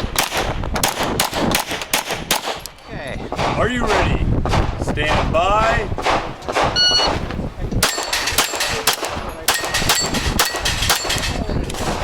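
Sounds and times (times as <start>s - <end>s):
pistol shots: 0.0s - 2.6s, 6.0s - 7.2s, 7.8s - 12.0s
shot timer beep: 6.8s - 7.1s.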